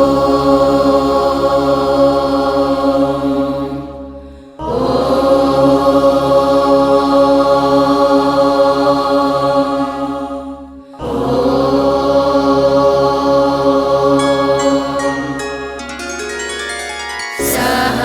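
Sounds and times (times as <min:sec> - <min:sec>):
drone-like held chords: 0:10.0 - 0:18.0.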